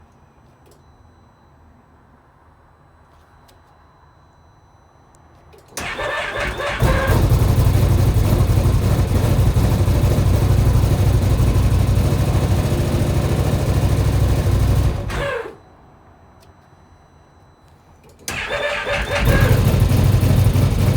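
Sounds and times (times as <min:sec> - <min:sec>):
electric starter cranking: 0:05.8 - 0:15.6, 0:18.3 - 0:20.9
engine running: 0:05.8 - 0:15.6, 0:18.3 - 0:20.9.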